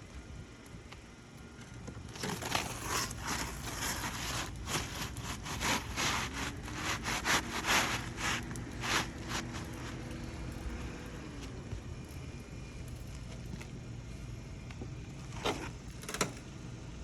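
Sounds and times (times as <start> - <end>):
scraping on asphalt shingles: 1.5 - 14.3.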